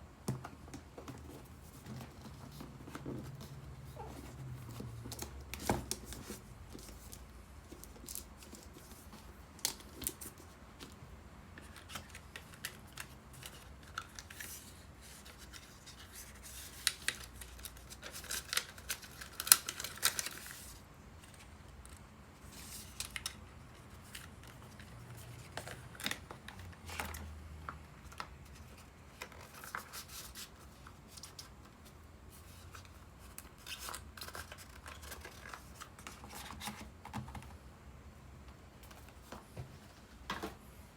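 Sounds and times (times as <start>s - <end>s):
packaging tearing and rustling: 11.7s - 20.8s, 32.7s - 36.9s
packaging clicks and scrapes: 32.4s - 37.4s.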